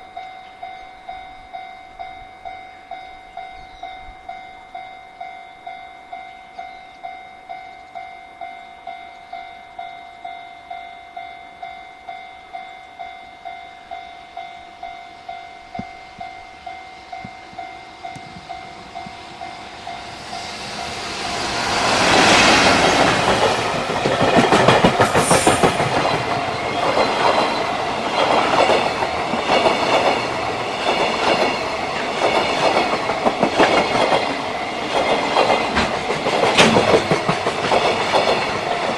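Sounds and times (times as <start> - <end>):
freight train passing: 0.0 - 38.9
level-crossing warning bell: 0.0 - 38.9
train wheels clattering on rails: 17.1 - 38.9.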